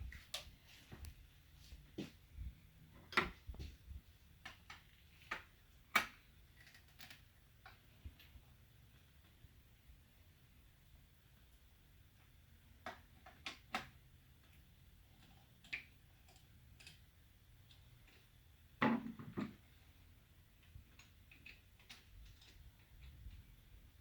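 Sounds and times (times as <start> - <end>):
plastic parts clicking and knocking: 4.4 - 8.4, 12.7 - 19.7, 20.6 - 23.5.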